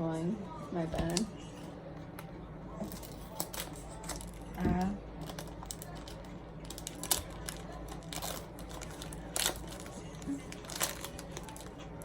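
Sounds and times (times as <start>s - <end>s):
snack packaging crinkling: 2.8s - 4.6s, 5.2s - 12.0s
sharp packaging crackles: 5.2s - 12.0s.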